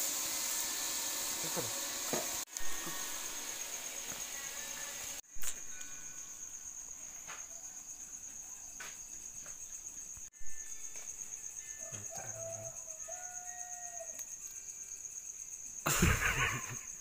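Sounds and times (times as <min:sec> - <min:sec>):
insects chirring: 0:00.0 - 0:17.0
rooster crowing: 0:11.6 - 0:14.2.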